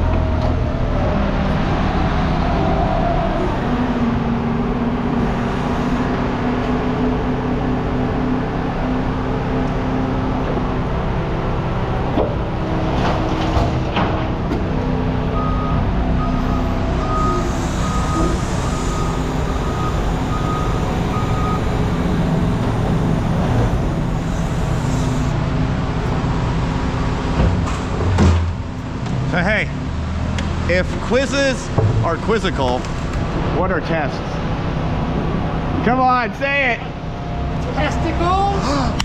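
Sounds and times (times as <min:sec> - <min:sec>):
vehicle engine running: 0:14.4 - 0:39.0
reversing alarm beeping: 0:15.3 - 0:25.4, 0:26.0 - 0:27.4
knocks: 0:31.7 - 0:32.2.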